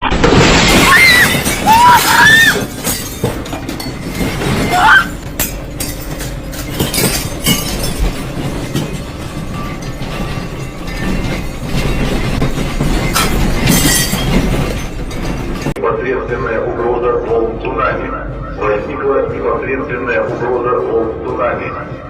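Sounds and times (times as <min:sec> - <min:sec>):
earthquake rumble: 0:00.0 - 0:15.8
loose objects rattling: 0:00.1 - 0:15.8
people screaming: 0:00.7 - 0:02.8, 0:04.7 - 0:05.2.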